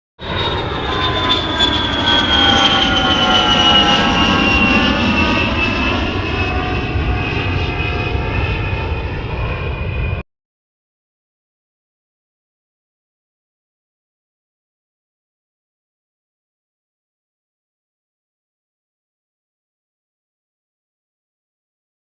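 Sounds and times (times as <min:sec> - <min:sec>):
airplane engine rumble and whine: 0:00.2 - 0:10.2.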